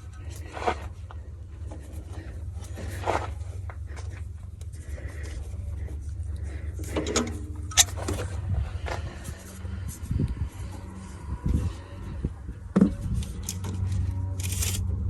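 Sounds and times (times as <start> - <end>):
steady low hum: 0.0 - 15.0
clicks and scrapes of tools: 6.8 - 9.6, 12.9 - 14.9.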